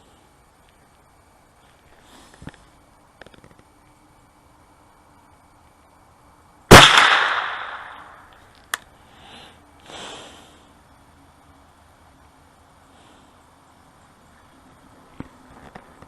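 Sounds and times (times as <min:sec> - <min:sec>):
rifle shot echoing: 0:06.7 - 0:08.2.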